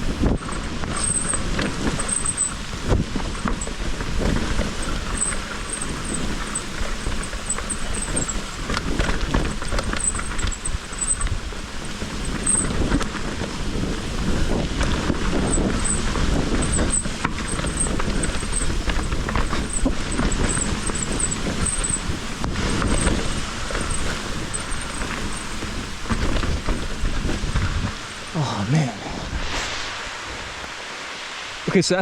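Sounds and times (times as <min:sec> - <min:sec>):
short high squeaks: 0:00.0 - 0:02.9, 0:04.7 - 0:12.9, 0:15.4 - 0:28.3
bike knocking and rattling: 0:00.0 - 0:28.3
tyre and wind noise: 0:00.0 - 0:32.0.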